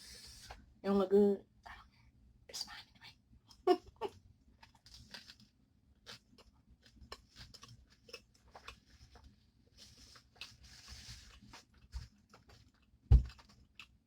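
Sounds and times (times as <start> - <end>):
chewing a sandwich: 4.4 - 14.0.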